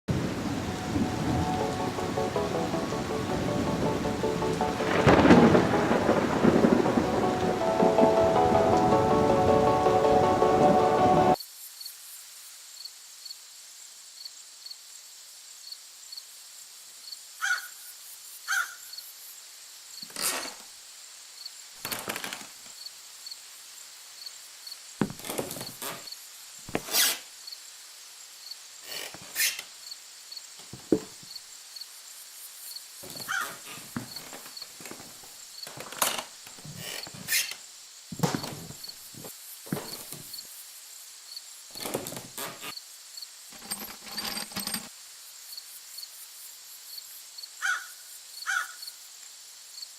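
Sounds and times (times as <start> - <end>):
faint hiss: 11.3 - 43.6, 44.9 - 49.9
short knocks and scrapes: 25.0 - 25.8, 26.7 - 27.1.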